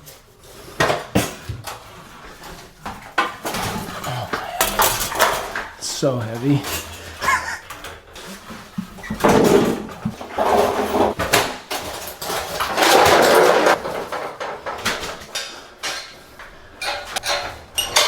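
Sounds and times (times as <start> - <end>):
heavy tank knocking and scraping: 5.0 - 14.3.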